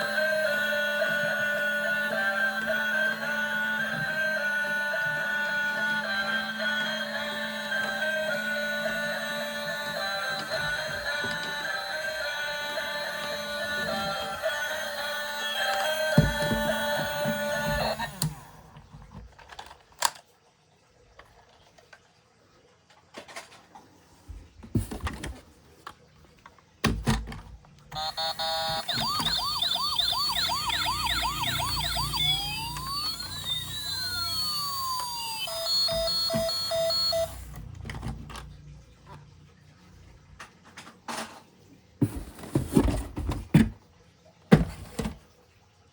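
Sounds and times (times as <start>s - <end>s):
toy electronic siren: 0.0s - 18.4s, 28.0s - 38.5s.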